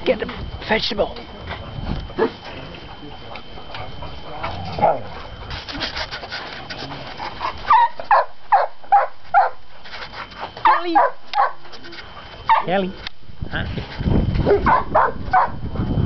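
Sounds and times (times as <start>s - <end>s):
rustling and scuffling: 3.8s - 8.2s, 8.9s - 10.8s
dog yipping: 7.7s - 9.6s, 10.6s - 11.6s, 12.5s - 12.7s, 14.5s - 15.6s.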